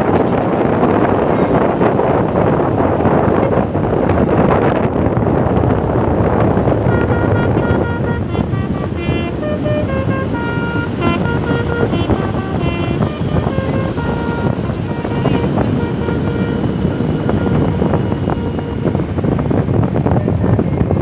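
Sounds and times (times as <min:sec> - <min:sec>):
bus passing with rushing noise: 0:00.0 - 0:21.0
wind on microphone: 0:00.0 - 0:21.0
bus horn playing melody: 0:06.2 - 0:19.6.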